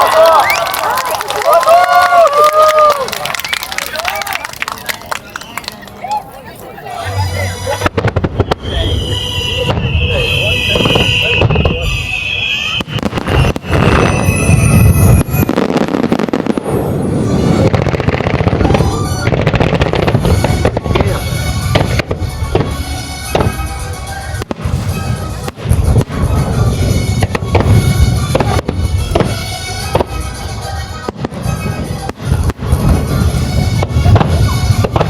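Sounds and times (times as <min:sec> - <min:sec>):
fireworks bursting: 0:07.0 - 0:35.0
loud music playing: 0:18.9 - 0:35.0.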